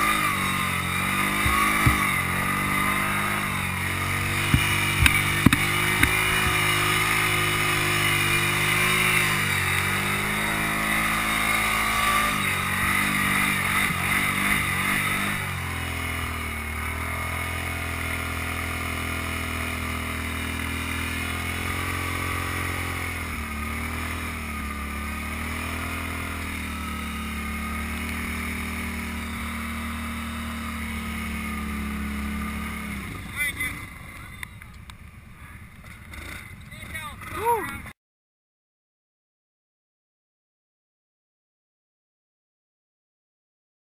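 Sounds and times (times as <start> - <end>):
atv engine revving: 0.0 - 37.9
sharp knocks: 1.1 - 3.0, 4.3 - 6.8.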